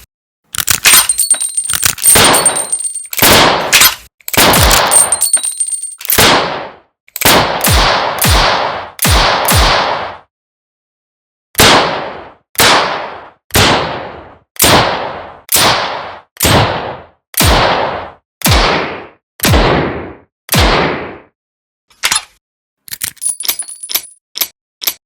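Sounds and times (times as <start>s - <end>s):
revolver gunshots: 2.1s - 3.8s, 4.4s - 5.2s.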